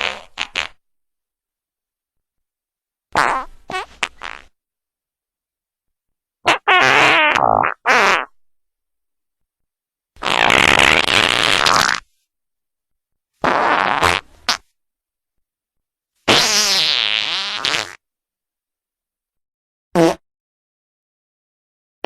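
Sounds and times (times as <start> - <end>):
fart sound effects: 0.0 - 0.8, 3.2 - 4.6, 6.5 - 8.4, 10.2 - 12.1, 13.4 - 14.7, 16.3 - 18.0, 20.0 - 20.2.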